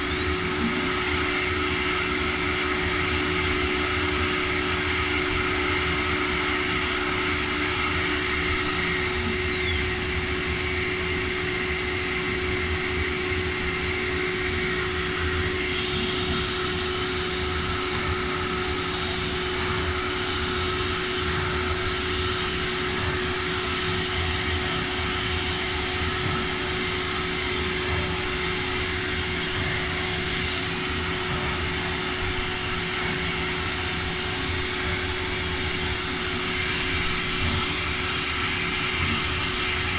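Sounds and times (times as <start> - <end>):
cnc router whining: 0.0 - 39.9.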